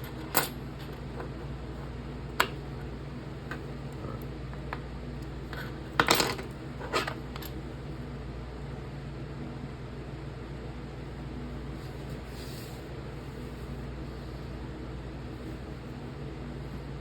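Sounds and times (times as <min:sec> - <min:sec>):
small metal parts clinking: 0:00.0 - 0:07.6
steady low hum: 0:00.0 - 0:17.0.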